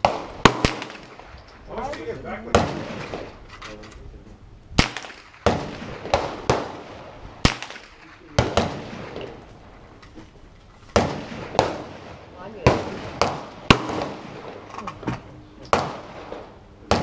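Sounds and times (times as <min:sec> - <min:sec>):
gunshots with echo: 0:00.0 - 0:01.3, 0:04.8 - 0:09.4, 0:11.0 - 0:14.7, 0:15.7 - 0:17.0.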